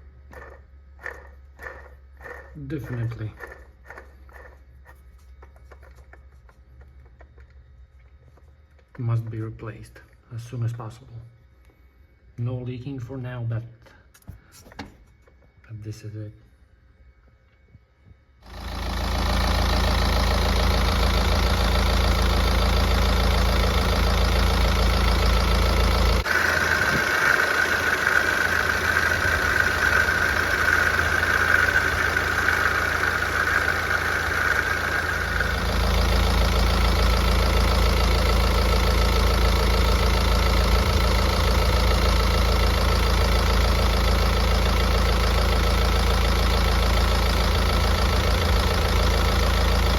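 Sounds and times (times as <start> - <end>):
coolant pump high whine: 18.3 - 49.9
diesel engine idling: 18.4 - 49.9.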